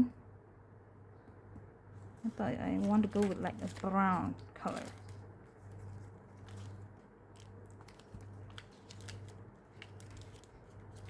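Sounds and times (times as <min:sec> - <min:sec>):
low steady hum: 0:00.0 - 0:11.0
sticker sheets rustling and clicking: 0:02.3 - 0:11.0.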